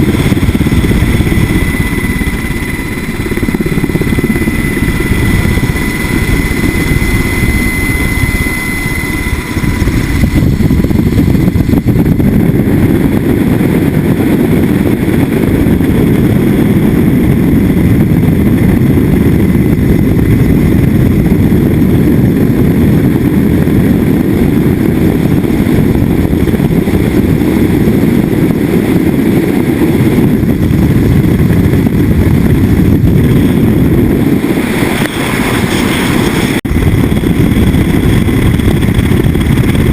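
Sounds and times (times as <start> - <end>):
thin high whine: 0.0 - 16.9, 32.7 - 39.9
helicopter rotor and turbine rumble: 0.0 - 39.9.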